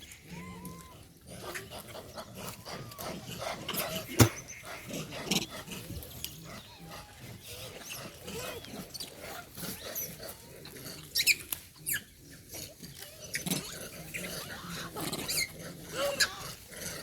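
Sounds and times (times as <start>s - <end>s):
monkeys calling: 0.0s - 17.0s.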